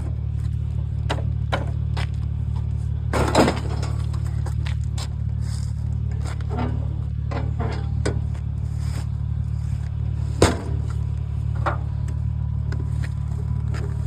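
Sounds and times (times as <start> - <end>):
vehicle engine idling: 0.0 - 14.0
scrap metal knocks: 3.1 - 4.6, 6.4 - 8.4.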